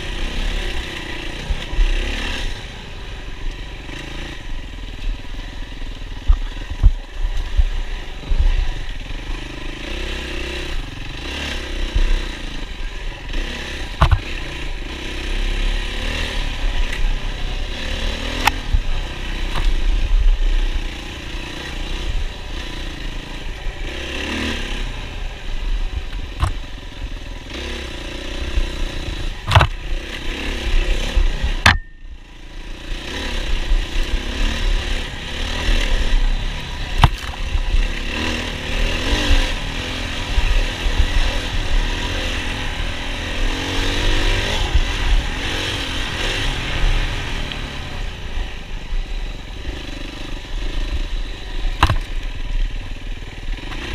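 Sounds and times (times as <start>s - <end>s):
dirt bike engine revving: 0.0s - 53.9s
knocks and rattles from bike: 3.5s - 9.7s, 10.6s - 15.0s, 18.2s - 22.7s, 25.8s - 32.4s, 33.2s - 47.7s, 49.7s - 53.9s.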